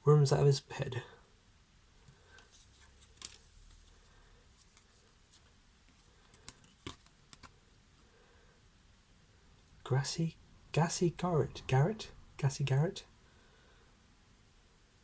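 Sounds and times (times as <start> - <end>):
trading cards clicking and flipping: 2.3 - 3.8, 4.6 - 7.6.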